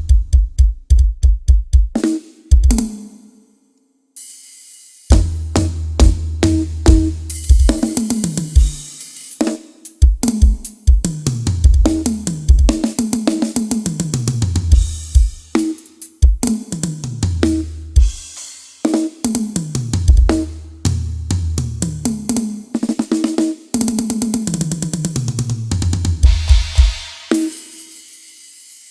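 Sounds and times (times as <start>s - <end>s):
bass drum: 0.0s - 2.9s, 5.1s - 8.8s, 10.0s - 12.9s, 13.8s - 15.6s, 16.2s - 18.3s, 19.3s - 22.4s, 24.4s - 27.3s
tom drum fills: 0.0s - 2.9s, 5.1s - 8.9s, 24.6s - 27.8s
snare drum: 0.0s - 3.0s, 5.1s - 20.6s, 21.8s - 28.9s
cymbal crashes: 26.2s - 28.9s.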